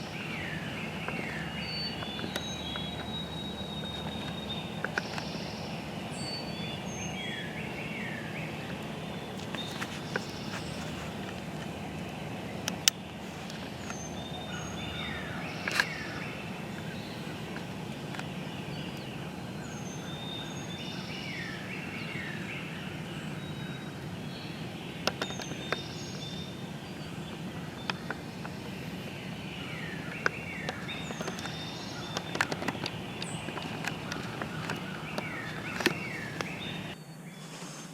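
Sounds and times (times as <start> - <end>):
low background hum: 0.0 - 37.6
wild birds calling: 0.0 - 37.9
sharp clicks: 27.2 - 37.0.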